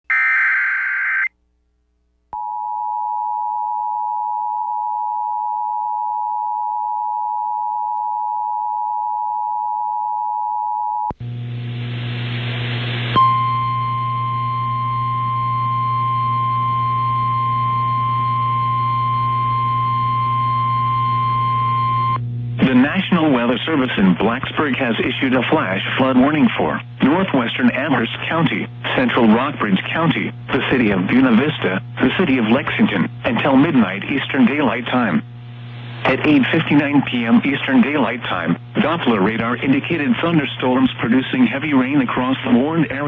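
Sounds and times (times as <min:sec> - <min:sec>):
steady single-pitch alarm tone: 0:00.1 - 0:01.3, 0:13.2 - 0:22.2
hissy humming radio feed: 0:11.3 - 0:43.0.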